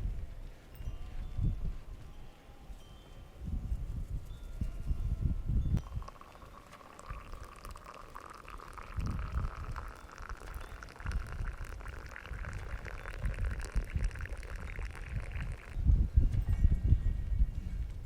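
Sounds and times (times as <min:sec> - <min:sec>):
liquid pouring into a vessel: 0:05.8 - 0:15.9.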